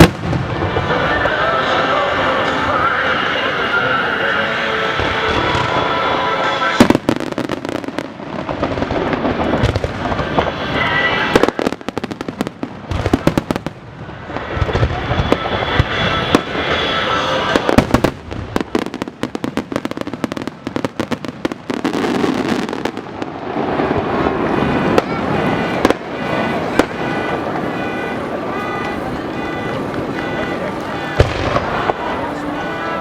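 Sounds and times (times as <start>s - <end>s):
fireworks bangs and crackles: 0.0s - 33.0s
music playing: 0.9s - 6.8s, 24.9s - 33.0s.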